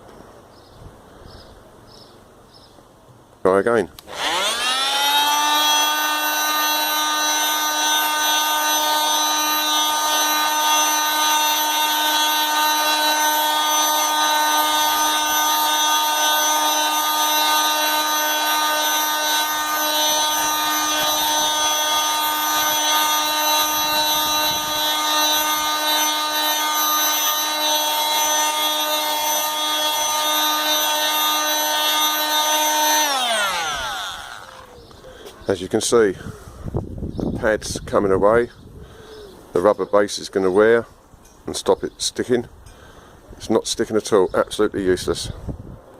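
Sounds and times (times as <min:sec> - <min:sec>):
oscillating multi-tool buzzing: 0:04.0 - 0:34.8.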